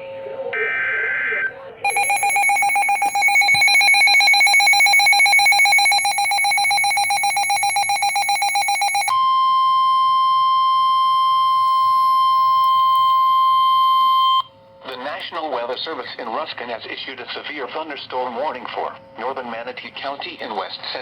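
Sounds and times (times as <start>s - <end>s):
steady warning alarm tone: 0.6s - 14.5s
pulsing electronic alert beep: 1.9s - 9.1s.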